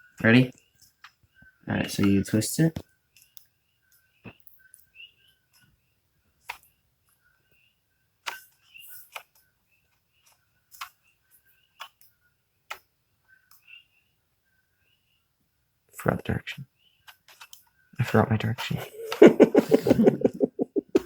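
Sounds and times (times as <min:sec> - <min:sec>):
wooden puzzle box clicking: 0:08.2 - 0:09.4, 0:10.2 - 0:11.0, 0:17.1 - 0:17.6.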